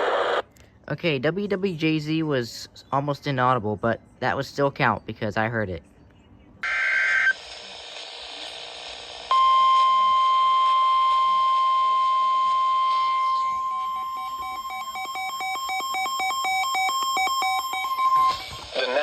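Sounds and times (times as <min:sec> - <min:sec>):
broken tone: 0:09.3 - 0:19.0
steady loud warning tone: 0:09.3 - 0:19.0.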